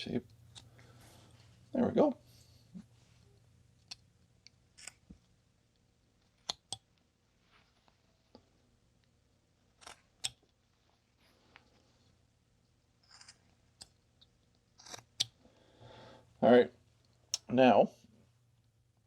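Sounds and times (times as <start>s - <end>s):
carving knife cutting wood: 13.0s - 13.9s, 14.8s - 15.3s.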